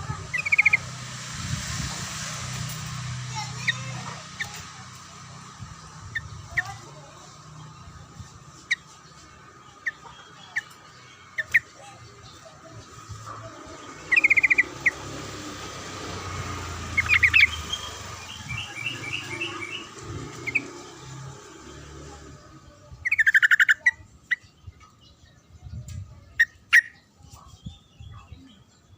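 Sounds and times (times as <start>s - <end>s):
bird chirping: 0.2s - 0.9s, 5.8s - 22.2s, 22.9s - 28.9s.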